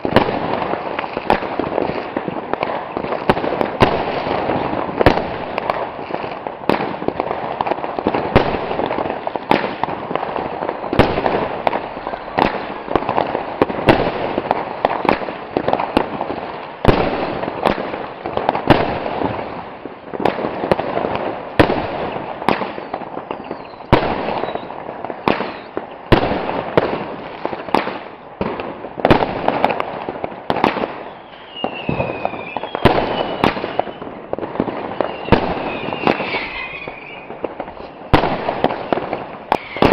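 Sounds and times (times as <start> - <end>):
firework bangs: 0.0 - 39.9
firework crackling: 0.0 - 39.9
falling firework whistles: 22.0 - 26.0, 30.8 - 39.9.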